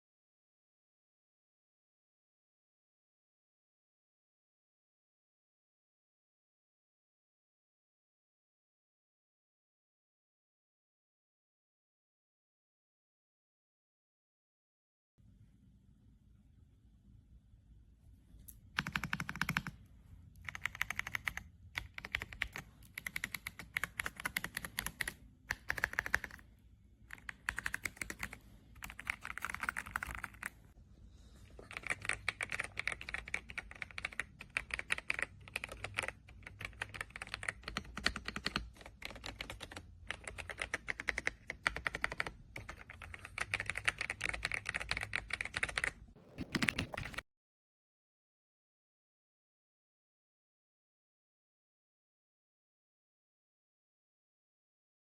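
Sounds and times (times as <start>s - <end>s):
fast typing on mechanical keyboard: 18.8s - 19.7s, 20.5s - 26.4s, 27.1s - 30.6s, 31.7s - 47.2s.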